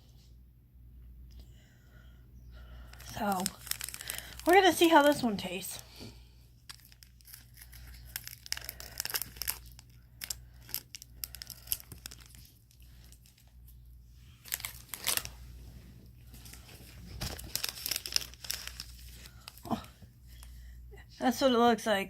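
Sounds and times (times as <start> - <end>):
snack packet tearing and crinkling: 2.9 - 5.6, 6.6 - 15.5, 16.3 - 20.5.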